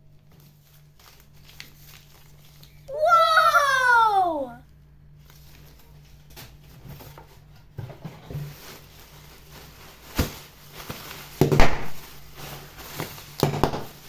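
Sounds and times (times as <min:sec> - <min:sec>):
items and packaging knocking: 0:11.3 - 0:12.1, 0:12.9 - 0:14.0.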